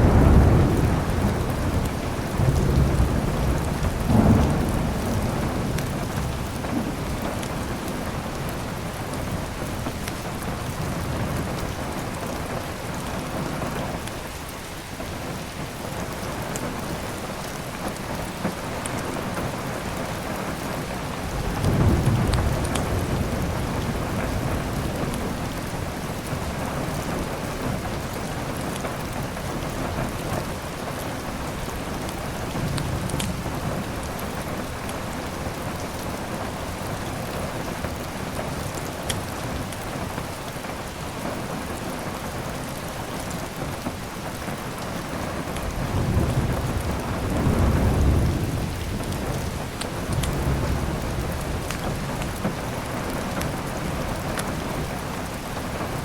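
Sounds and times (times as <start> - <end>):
thunder rumbling: 0.0 - 13.8, 19.2 - 30.6, 45.3 - 56.0
steady rain: 0.0 - 56.0.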